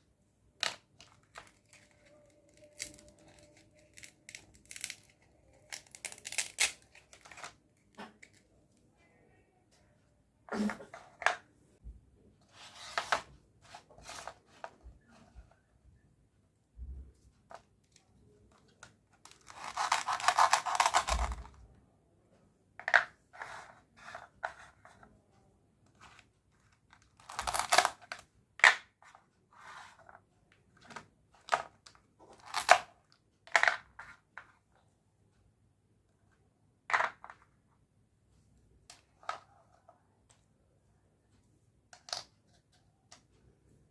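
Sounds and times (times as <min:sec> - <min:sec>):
packaging tearing: 0:01.6 - 0:07.5, 0:19.4 - 0:21.4.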